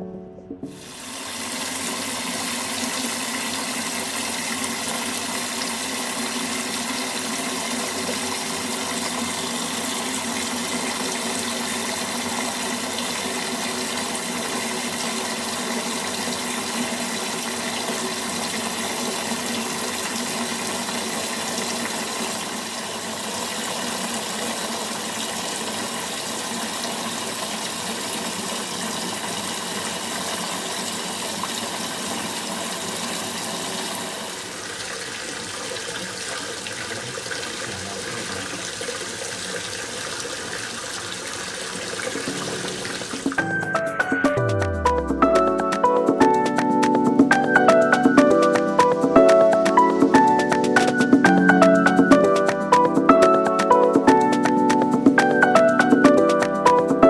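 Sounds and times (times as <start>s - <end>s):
running water rushing: 0.7s - 43.7s.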